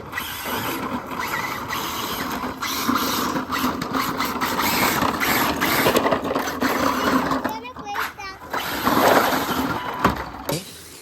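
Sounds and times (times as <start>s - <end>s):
electric toy car motor whirring: 0.0s - 11.0s
plastic wheels scraping: 0.0s - 11.0s.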